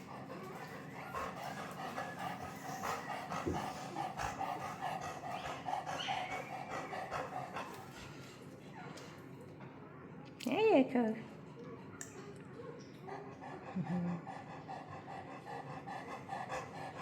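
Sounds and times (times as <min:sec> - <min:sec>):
dog panting: 0:00.0 - 0:08.5, 0:12.8 - 0:17.0.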